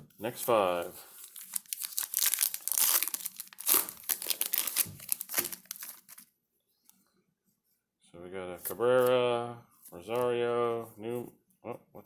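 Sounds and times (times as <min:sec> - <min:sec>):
card pack wrappers tearing: 0:01.2 - 0:06.3.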